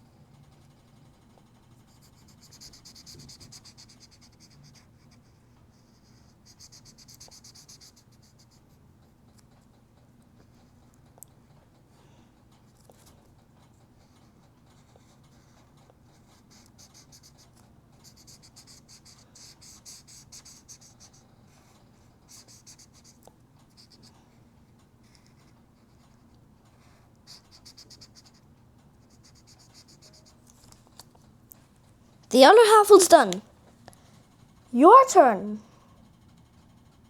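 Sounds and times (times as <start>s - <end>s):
coloring tool scratching on paper: 1.9s - 8.6s, 16.2s - 21.2s, 22.3s - 23.2s, 29.0s - 30.4s.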